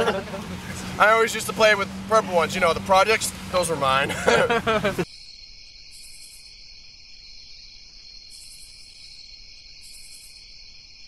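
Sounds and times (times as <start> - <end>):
insects high buzz: 4.5 - 11.0
insect pulsing trill: 5.1 - 11.0.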